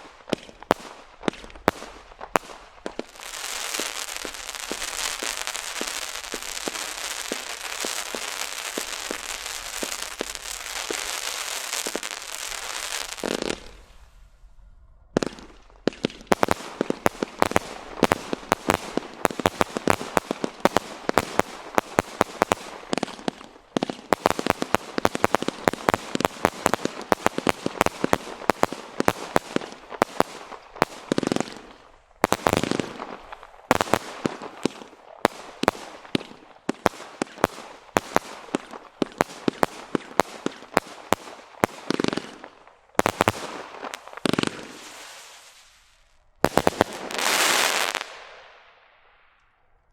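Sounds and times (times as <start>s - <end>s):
firework cracks and bangs: 0.0s - 14.0s, 15.2s - 49.4s
firework crackling hiss: 0.6s - 14.4s, 36.7s - 48.9s.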